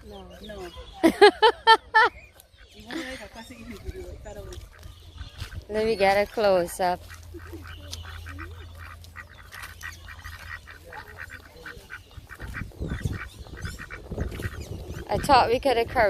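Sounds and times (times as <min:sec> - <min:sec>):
waterfowl honking: 0:02.6 - 0:16.0
low rumble: 0:11.3 - 0:16.0.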